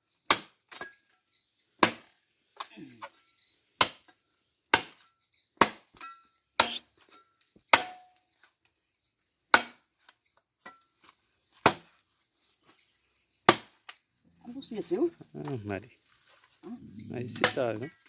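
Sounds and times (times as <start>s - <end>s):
axe chopping firewood: 0.2s - 1.0s, 1.8s - 3.2s, 3.8s - 6.8s, 7.7s - 8.2s, 9.5s - 12.0s, 13.4s - 13.9s, 17.3s - 18.0s.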